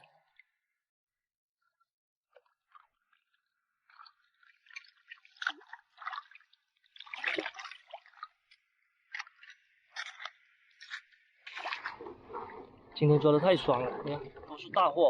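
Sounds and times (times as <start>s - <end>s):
wet squelches and splashes: 1.6s - 13.0s.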